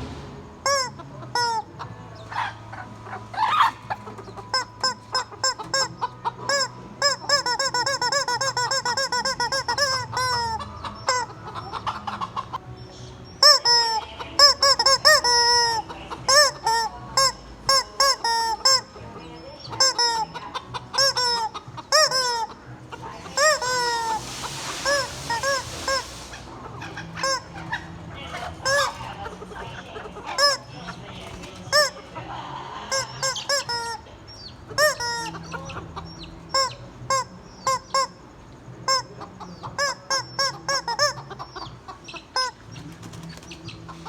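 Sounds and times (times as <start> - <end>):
rubber chicken toy squeaking: 0.6 - 12.6, 13.4 - 32.2, 32.8 - 43.5.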